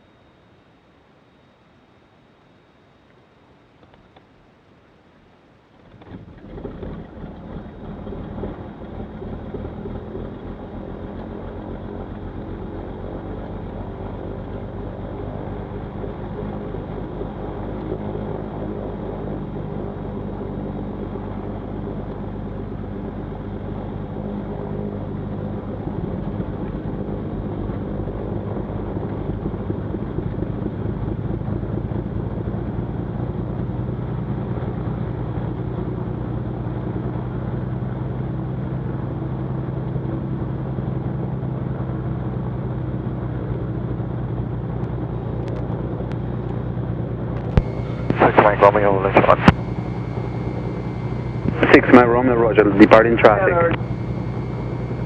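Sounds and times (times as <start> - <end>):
piston aircraft engine idling: 46.8 - 55.0.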